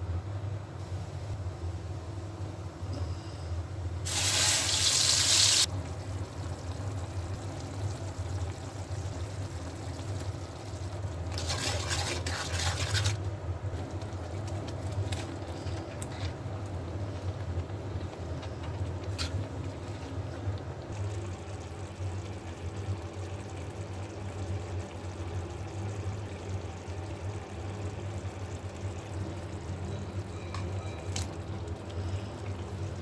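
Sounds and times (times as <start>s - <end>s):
steady low hum: 0.0s - 4.1s.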